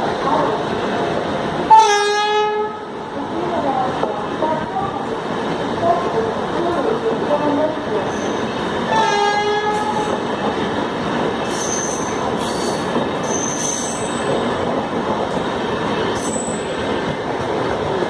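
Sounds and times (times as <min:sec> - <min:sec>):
train wheels rumbling on rail: 0:00.0 - 0:18.0
high-pitched wheel squeals: 0:11.5 - 0:14.4.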